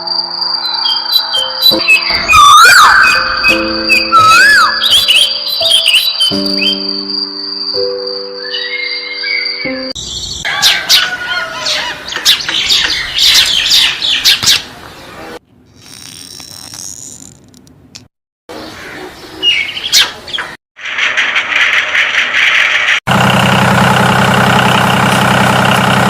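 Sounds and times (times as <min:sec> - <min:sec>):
birds chirping and squawking: 0:00.6 - 0:07.0, 0:08.4 - 0:15.4, 0:18.5 - 0:23.0.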